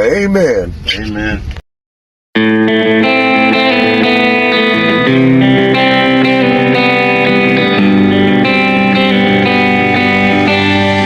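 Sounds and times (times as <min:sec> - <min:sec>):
plucked guitar music: 0:02.4 - 0:11.0.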